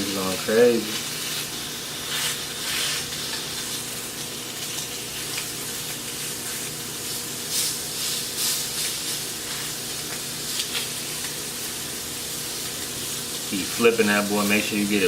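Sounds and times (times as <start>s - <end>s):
sausage sizzling in a pan: 0.0s - 15.0s
crackling pops: 0.8s - 11.8s.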